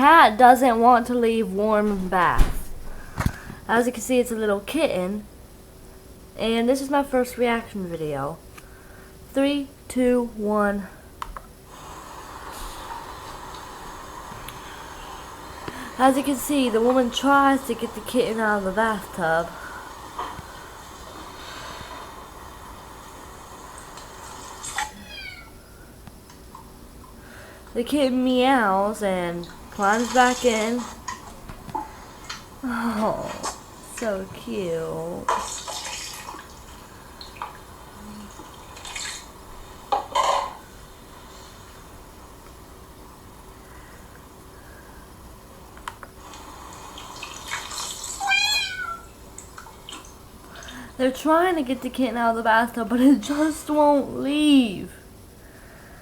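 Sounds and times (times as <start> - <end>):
kitten meowing: 24.8 - 25.6, 48.2 - 49.0
water trickling and splashing: 29.4 - 31.4, 35.3 - 39.5, 46.3 - 50.9.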